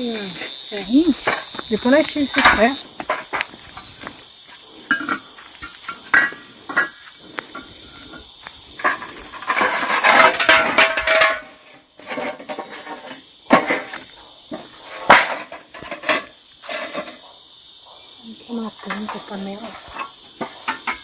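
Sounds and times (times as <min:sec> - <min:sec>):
camp gear knocking and clattering: 0:00.0 - 0:04.2, 0:04.8 - 0:17.2, 0:18.8 - 0:21.0
crickets chirring: 0:00.0 - 0:21.0.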